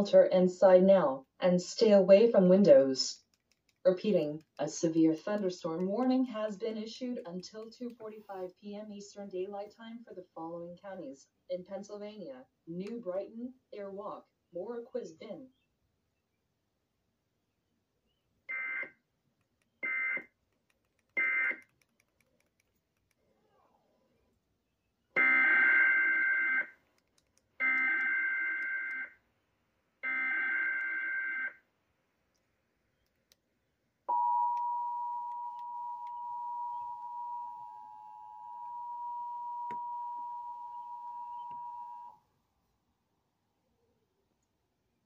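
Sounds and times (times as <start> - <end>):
steady attention tone: 34.1 - 42.2.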